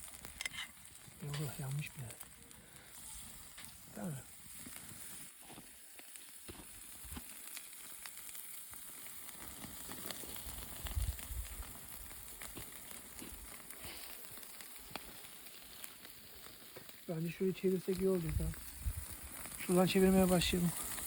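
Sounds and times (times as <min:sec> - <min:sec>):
fire crackling: 0:00.0 - 0:21.0
food sizzling in a pan: 0:00.0 - 0:21.0.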